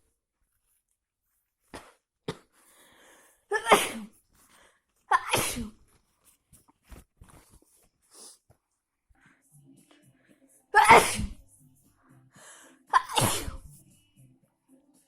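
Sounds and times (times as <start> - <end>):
person sneezing loudly: 3.5 - 4.1, 5.1 - 5.8, 10.8 - 11.4, 12.9 - 13.7.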